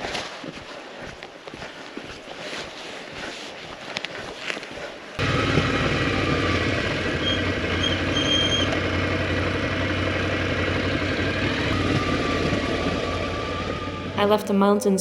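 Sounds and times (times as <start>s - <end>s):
motorcycle engine running: 5.2s - 14.4s.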